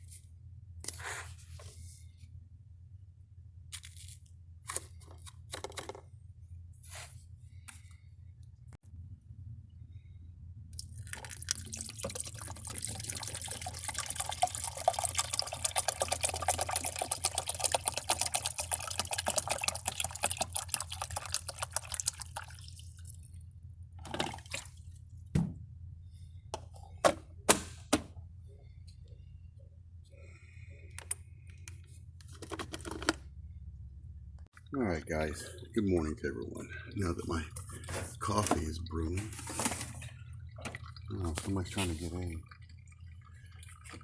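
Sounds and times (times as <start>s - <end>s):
low hum: 0.1s - 14.5s, 24.6s - 44.0s
coffee maker sputtering and dripping: 10.6s - 25.0s, 34.4s - 44.0s.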